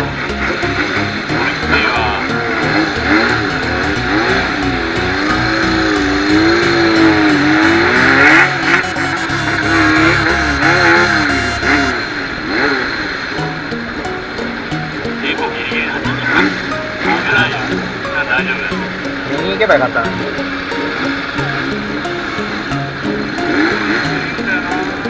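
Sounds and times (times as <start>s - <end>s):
music with sung melody and beat: 0.0s - 12.5s, 13.4s - 25.0s
car running noise: 0.0s - 25.0s.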